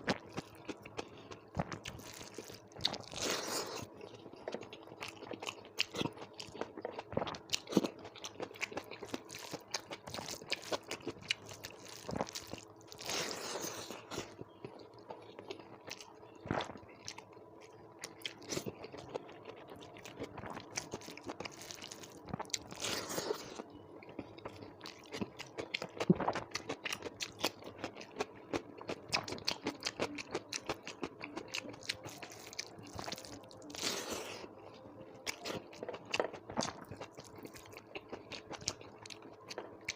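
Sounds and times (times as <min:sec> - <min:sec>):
person chewing crunchy food: 0:00.0 - 0:39.9.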